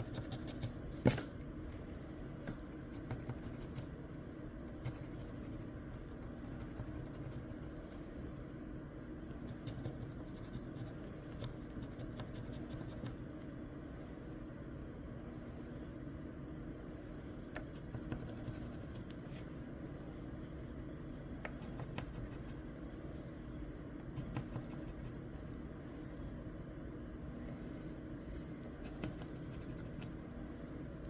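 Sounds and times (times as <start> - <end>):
scratching lottery ticket: 0.0 - 0.8, 4.9 - 7.7
steady low hum: 0.0 - 31.0.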